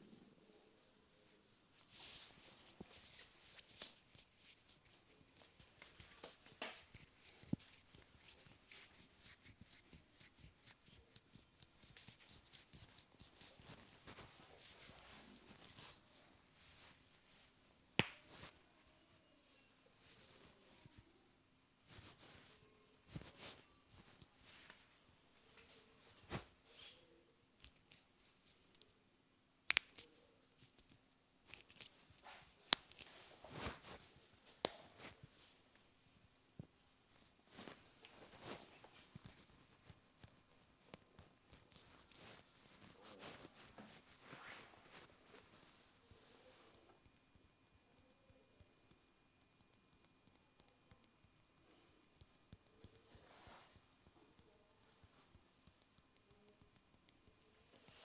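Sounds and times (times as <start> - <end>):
hands rubbing hair and scalp: 0.7 - 18.6, 21.8 - 27.0, 29.7 - 35.8, 37.5 - 47.2, 52.3 - 54.2, 54.8 - 58.0
hands cracking and slapping: 2.8 - 15.0, 18.0 - 18.5, 29.6 - 35.1.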